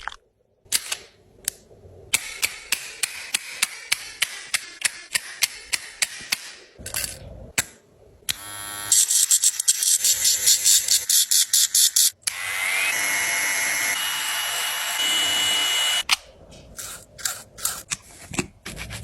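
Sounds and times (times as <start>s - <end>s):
electric nail grinder buzzing: 8.3s - 16.0s.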